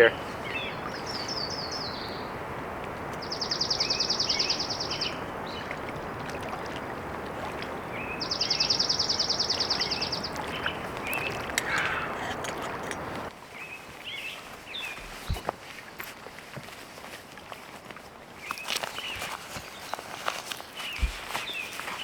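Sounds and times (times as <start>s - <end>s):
birds chirping: 0.0s - 15.4s, 18.4s - 22.0s
songbird high trill: 3.2s - 5.2s, 8.0s - 13.3s.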